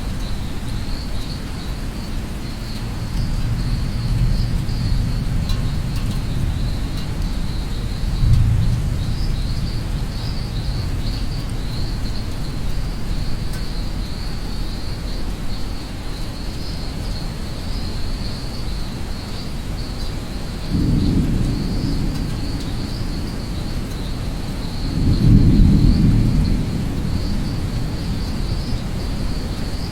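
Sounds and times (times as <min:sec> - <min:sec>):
high insect trill: 0:00.0 - 0:29.9
rain hiss: 0:00.0 - 0:29.9
rolling thunder: 0:03.0 - 0:13.4, 0:20.7 - 0:29.9.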